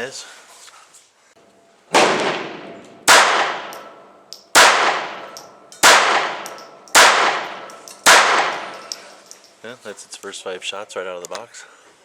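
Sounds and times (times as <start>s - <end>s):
pistol shots echoing: 1.9s - 9.2s.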